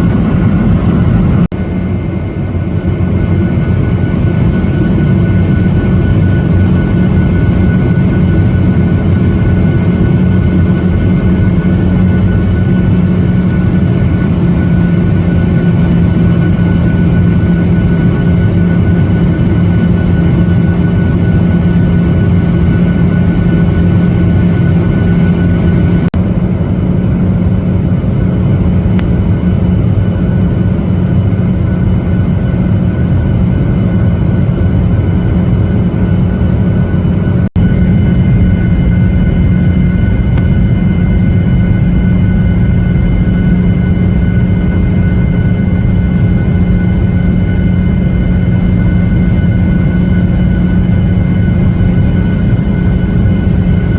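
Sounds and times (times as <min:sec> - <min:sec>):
thin steady whines: 0:00.0 - 0:27.5, 0:28.1 - 0:53.9
airliner cabin engine drone: 0:00.0 - 0:53.9.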